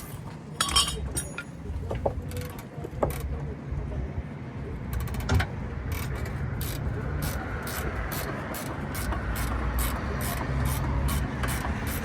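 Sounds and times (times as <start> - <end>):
hand tools clanking on metal: 0.0 - 1.6.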